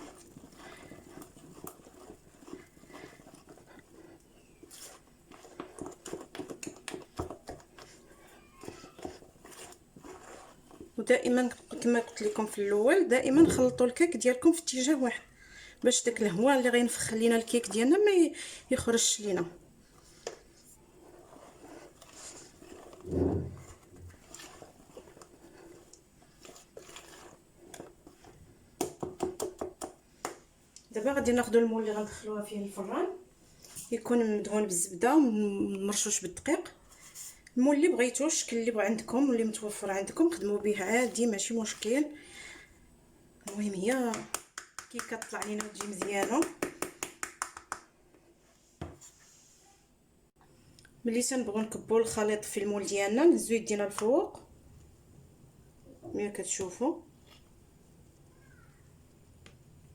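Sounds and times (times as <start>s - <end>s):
utensil scraping and tapping bowl: 0.0s - 14.0s, 20.2s - 30.4s, 43.5s - 47.3s
batter squelching: 0.0s - 34.7s, 36.0s - 47.1s.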